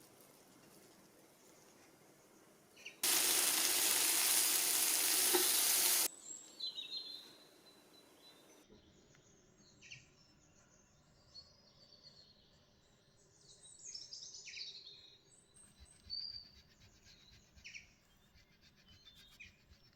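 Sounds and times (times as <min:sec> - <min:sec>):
background hiss: 0:02.8 - 0:06.1
faint bird chirps: 0:13.5 - 0:19.9.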